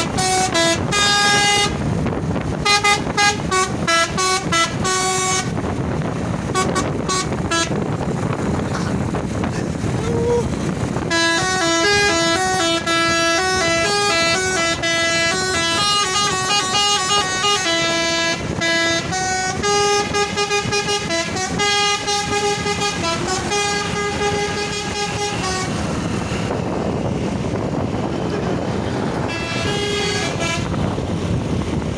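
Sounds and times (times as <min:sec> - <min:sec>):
multi-tone bus horn melody: 0:00.0 - 0:09.1, 0:10.7 - 0:31.6
steady rushing noise: 0:00.0 - 0:31.9.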